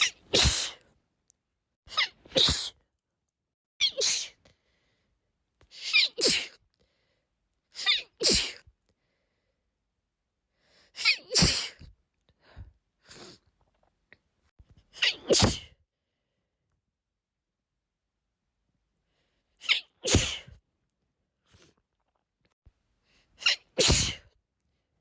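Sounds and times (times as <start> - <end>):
woman sneezing: 0.0 - 0.8, 1.9 - 2.8, 5.8 - 6.6, 7.8 - 8.6, 11.0 - 11.9, 15.0 - 15.8, 19.6 - 20.6, 23.4 - 24.3.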